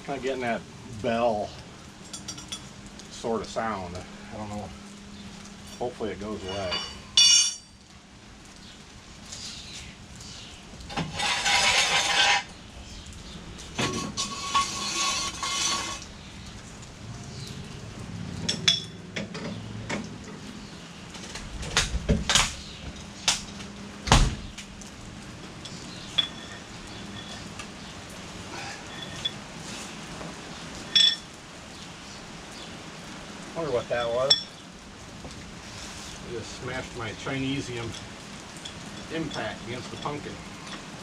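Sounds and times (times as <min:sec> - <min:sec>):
metal tools clinking and clattering: 0:02.0 - 0:02.7, 0:05.6 - 0:07.8, 0:25.6 - 0:27.6, 0:28.8 - 0:29.4, 0:30.9 - 0:31.3
ringing metal clang: 0:06.4 - 0:07.8.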